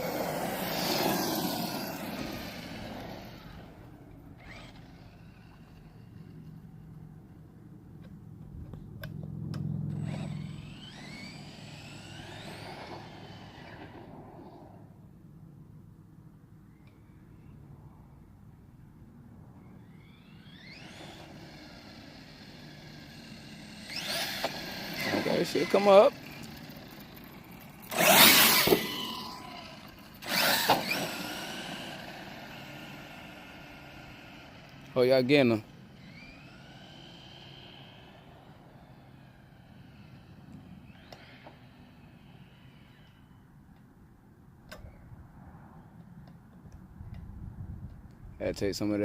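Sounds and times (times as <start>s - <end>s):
electric motor whining: 0.0s - 6.7s, 9.1s - 14.8s, 19.6s - 43.5s.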